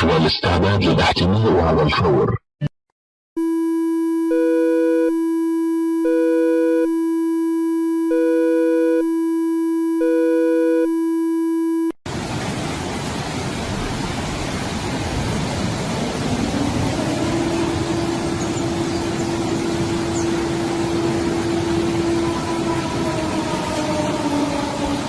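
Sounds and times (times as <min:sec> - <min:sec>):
synthesized alert tone drone: 0:03.4 - 0:11.9.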